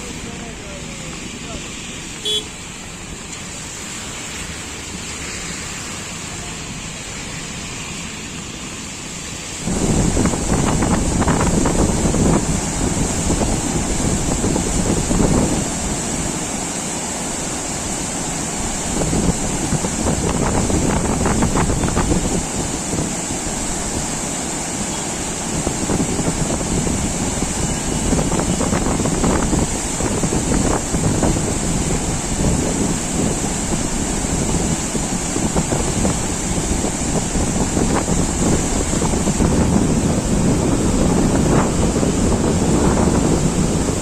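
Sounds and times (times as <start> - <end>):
floodwater rushing: 0.0 - 44.0
wind buffeting microphone: 9.6 - 16.7, 18.4 - 24.3, 25.2 - 44.0.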